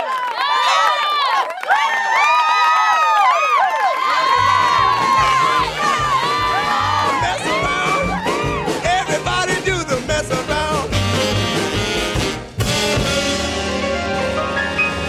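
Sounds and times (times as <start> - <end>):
music with quick beat: 4.4 - 13.0.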